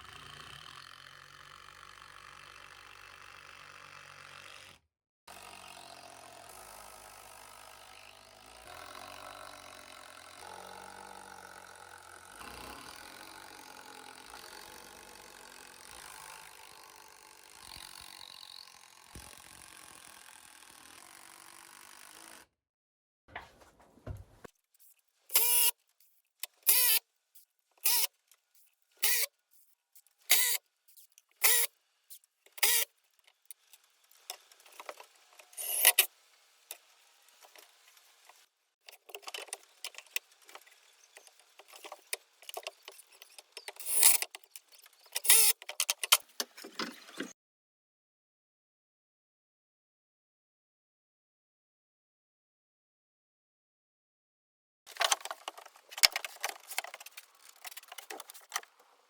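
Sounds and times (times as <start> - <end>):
mixed work noise: 23.3 - 25.7, 27.8 - 47.3, 54.9 - 59.0.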